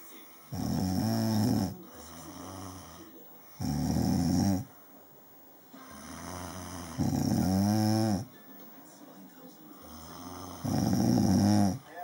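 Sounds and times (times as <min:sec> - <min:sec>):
person snoring: 0:00.5 - 0:04.7, 0:05.8 - 0:08.3, 0:09.8 - 0:12.0
quiet breath: 0:01.7 - 0:03.8.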